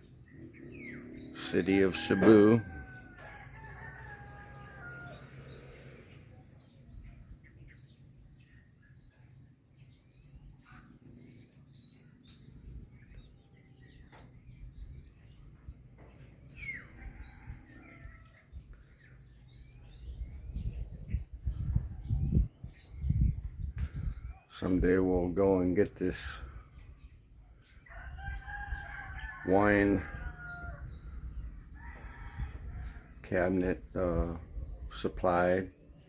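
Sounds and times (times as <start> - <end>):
insect drone: 0.0 - 36.0
low wind rumble: 12.4 - 36.0.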